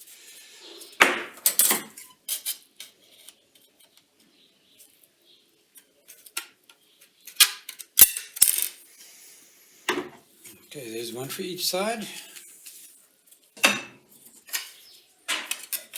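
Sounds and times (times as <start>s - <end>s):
small metal pieces clinking: 7.4s - 9.9s.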